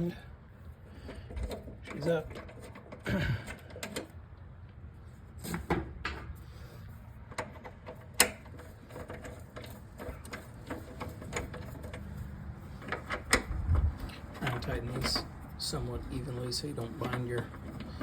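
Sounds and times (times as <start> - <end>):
low steady rumble: 0.0 - 18.0
metal clicks and knocks: 1.0 - 4.2, 7.3 - 18.0.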